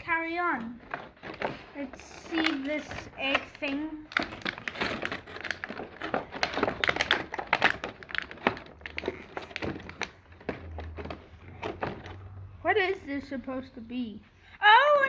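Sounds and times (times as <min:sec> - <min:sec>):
plastic packaging crinkling: 0:00.8 - 0:12.2.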